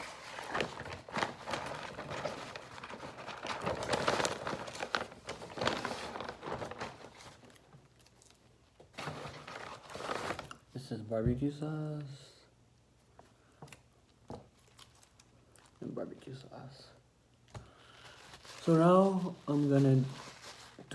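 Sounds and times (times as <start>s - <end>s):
paper packaging rustling: 0.0s - 10.7s, 14.5s - 15.8s, 17.8s - 20.9s.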